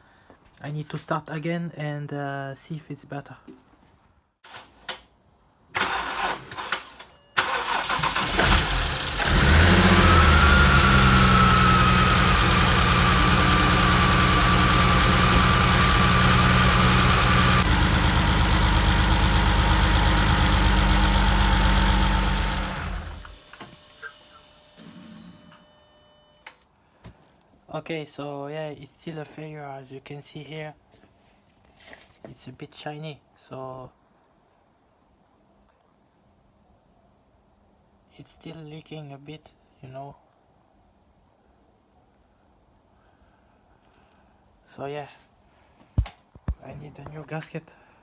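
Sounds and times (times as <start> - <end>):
engine starter cranking: 5.8 - 23.8
car engine running: 8.3 - 23.5.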